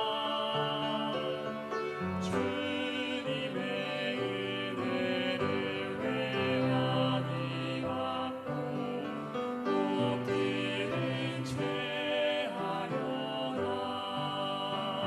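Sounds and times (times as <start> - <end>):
church choir singing a hymn: 0.0 - 15.0.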